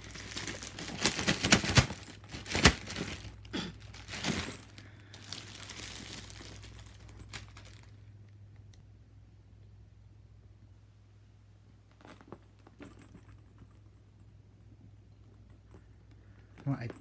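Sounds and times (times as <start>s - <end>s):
plastic packaging crinkling: 0.0s - 8.1s.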